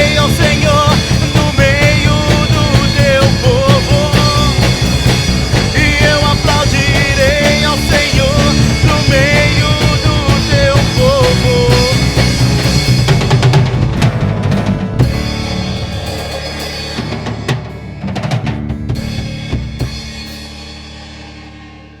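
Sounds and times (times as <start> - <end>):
person singing: 0.0 - 12.6
drum kit: 0.0 - 22.0.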